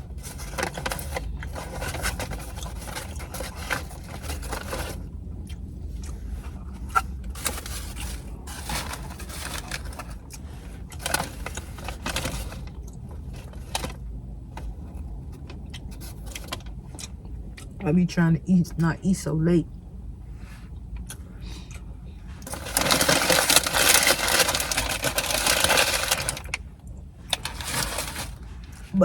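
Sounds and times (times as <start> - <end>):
paper wrapper rustling: 0.0 - 5.0, 6.8 - 14.1, 22.4 - 26.6, 27.3 - 28.6
low steady rumble: 0.0 - 29.0.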